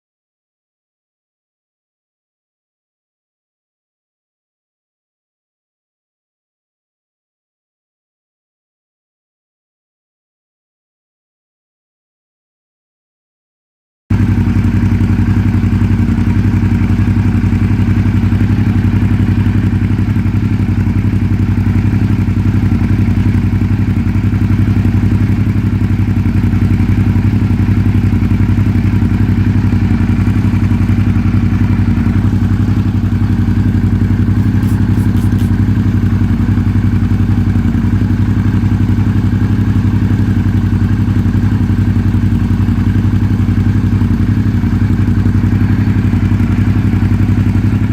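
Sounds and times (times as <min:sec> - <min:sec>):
motorcycle engine idling: 0:14.1 - 0:47.9.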